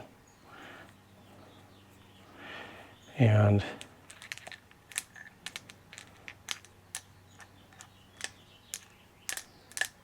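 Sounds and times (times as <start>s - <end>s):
faint steady hum: 0.0s - 10.0s
metal parts and tools clicking: 3.8s - 10.0s.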